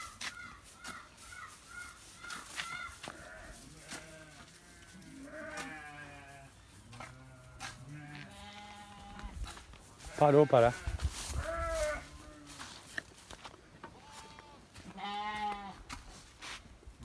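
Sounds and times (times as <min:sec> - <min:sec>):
sheep bleating: 0:02.2 - 0:09.4, 0:10.0 - 0:12.7, 0:14.0 - 0:15.8.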